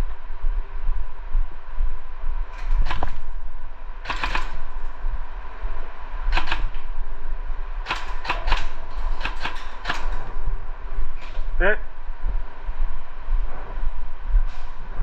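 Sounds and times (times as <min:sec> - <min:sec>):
steady low rumble: 0:00.0 - 0:15.0
airsoft guns firing bursts: 0:02.8 - 0:03.3, 0:04.0 - 0:04.9, 0:06.3 - 0:06.8, 0:07.8 - 0:10.3.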